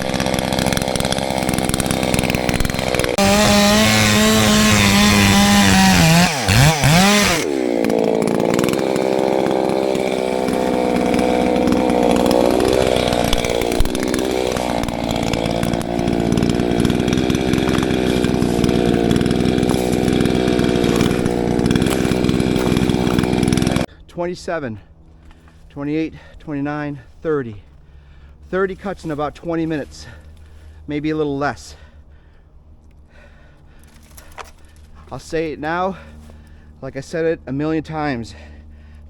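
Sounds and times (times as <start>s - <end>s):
chainsaw cutting log: 0.0s - 23.9s, 33.8s - 37.2s.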